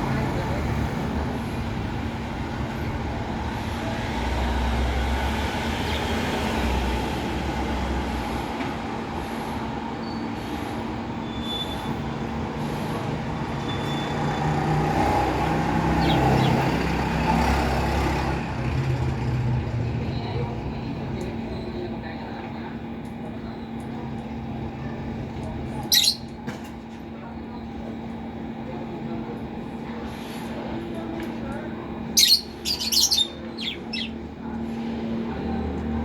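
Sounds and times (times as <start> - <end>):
faint high chirps: 25.9 - 26.3, 32.2 - 34.2.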